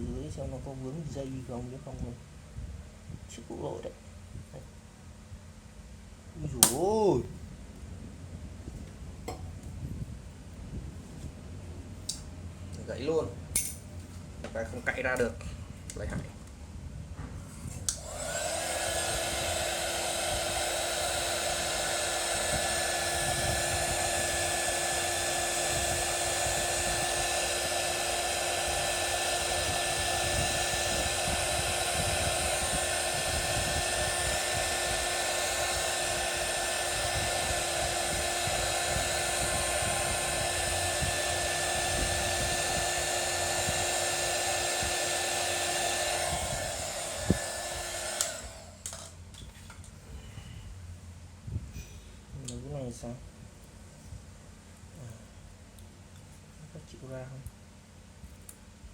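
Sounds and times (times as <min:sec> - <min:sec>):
hot-air blower whining: 0:06.4 - 0:07.5, 0:08.6 - 0:11.3, 0:17.5 - 0:49.2.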